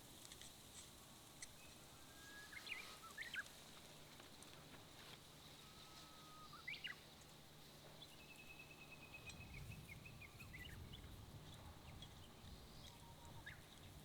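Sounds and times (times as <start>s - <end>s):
faint bird singing: 1.5s - 3.6s, 5.4s - 14.0s.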